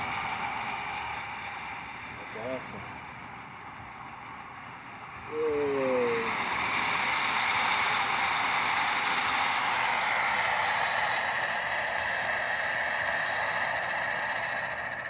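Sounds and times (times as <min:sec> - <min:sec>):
firework fountain hissing: 0:05.3 - 0:15.0.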